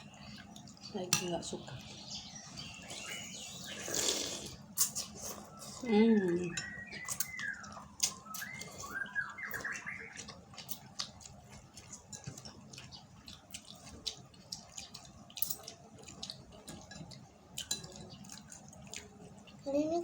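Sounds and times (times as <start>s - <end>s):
chewing smacks: 6.6s - 19.6s.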